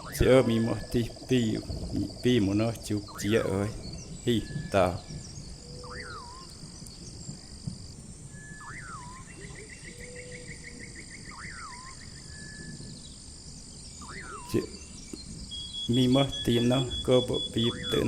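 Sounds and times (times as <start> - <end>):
insects buzzing: 0.0 - 18.0.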